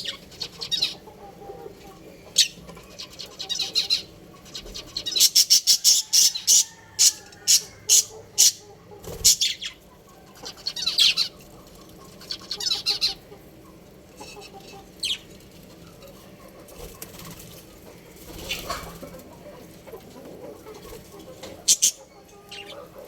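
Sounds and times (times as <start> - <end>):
budgerigars chirping: 0.0 - 9.8, 10.4 - 11.4, 12.2 - 13.3, 14.2 - 15.3, 21.4 - 23.0.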